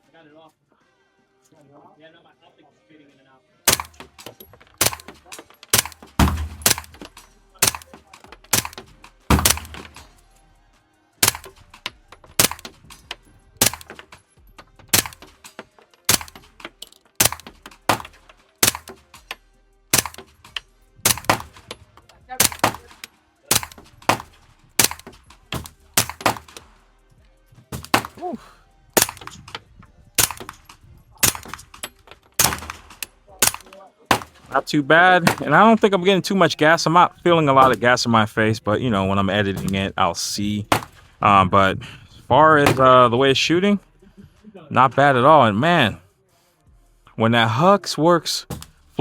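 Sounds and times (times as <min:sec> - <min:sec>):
suppressed gunshots: 0:03.7 - 0:10.3, 0:11.2 - 0:26.8, 0:27.7 - 0:28.3, 0:28.9 - 0:35.8, 0:37.6 - 0:37.9, 0:40.7 - 0:41.2, 0:42.6 - 0:43.1.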